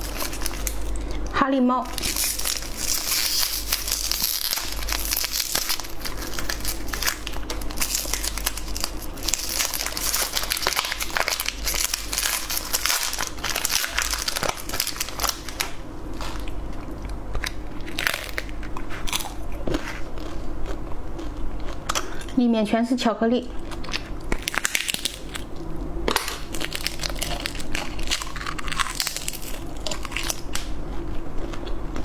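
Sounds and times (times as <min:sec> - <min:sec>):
candy wrapper crinkling: 0:00.0 - 0:01.2, 0:01.8 - 0:16.6, 0:26.1 - 0:30.7.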